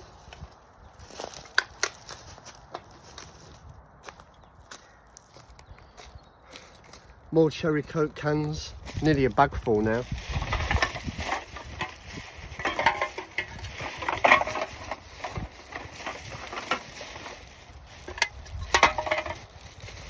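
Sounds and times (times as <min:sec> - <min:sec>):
rubbish bag crinkling: 0:09.9 - 0:20.0
aluminium cans clinking: 0:10.5 - 0:19.5.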